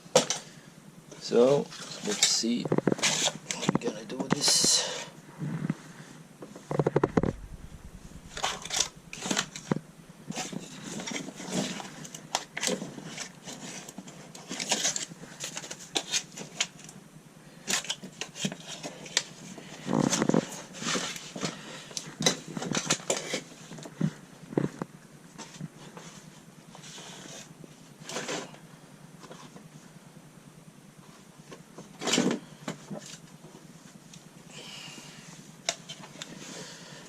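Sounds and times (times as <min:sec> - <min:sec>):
mat rustling and crackling: 0:06.6 - 0:16.6.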